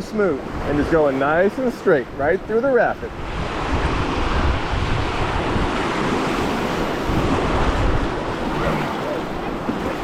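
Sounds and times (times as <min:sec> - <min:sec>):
wind buffeting microphone: 0:02.1 - 0:10.0
river water rushing: 0:03.2 - 0:10.0.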